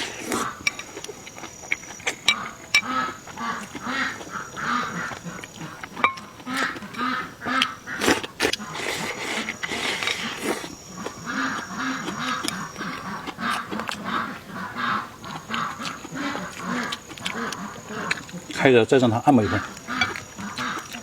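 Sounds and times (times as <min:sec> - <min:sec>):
duck quacking: 0:06.5 - 0:08.0, 0:11.2 - 0:18.1, 0:19.3 - 0:20.8.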